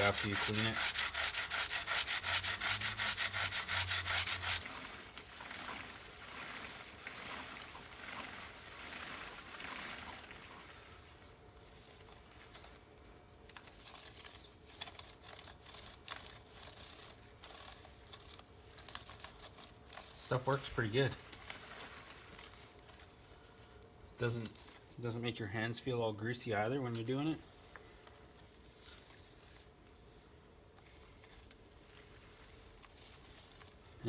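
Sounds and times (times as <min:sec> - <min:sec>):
brush scrubbing chain: 0:00.0 - 0:12.9, 0:13.5 - 0:23.4.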